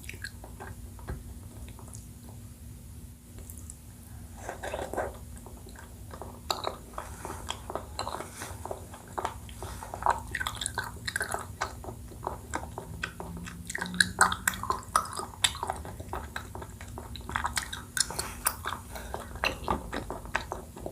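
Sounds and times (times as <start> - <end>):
close chewing and biting: 4.4 - 20.9.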